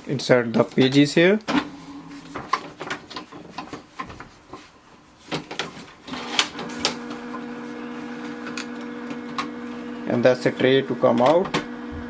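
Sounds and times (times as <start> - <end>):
plastic parts clicking and knocking: 2.3 - 4.3, 5.3 - 6.5
printer motor hum: 6.1 - 12.0.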